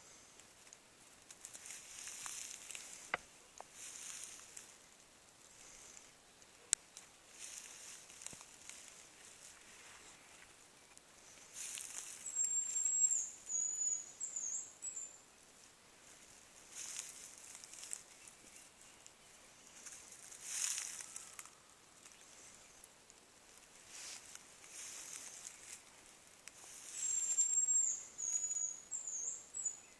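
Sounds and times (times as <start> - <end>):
rustling noise: 0.1 - 5.0, 7.3 - 10.6, 16.0 - 21.6, 23.4 - 27.6.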